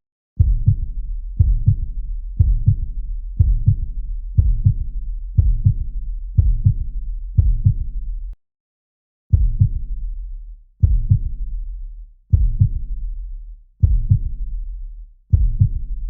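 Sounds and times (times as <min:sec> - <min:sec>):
heartbeat double thump: 0:00.4 - 0:08.0, 0:09.3 - 0:09.9, 0:10.8 - 0:11.3, 0:12.3 - 0:12.9, 0:13.8 - 0:14.3, 0:15.3 - 0:15.9.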